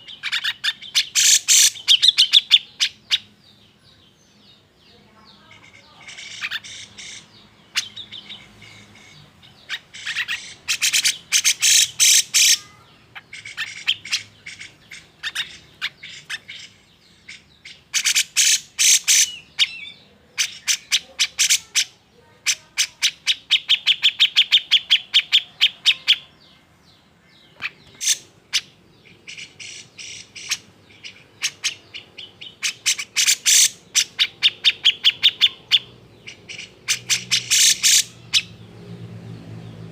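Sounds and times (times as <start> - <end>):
bulbul chattering and trilling: 0.0 - 3.6, 5.4 - 26.3, 27.4 - 38.6.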